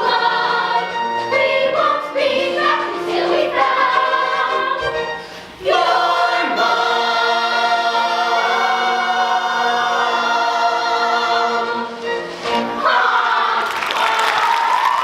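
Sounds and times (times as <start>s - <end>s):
children's chorus singing: 0.0s - 5.0s, 5.6s - 15.0s
musical accompaniment: 0.0s - 15.0s.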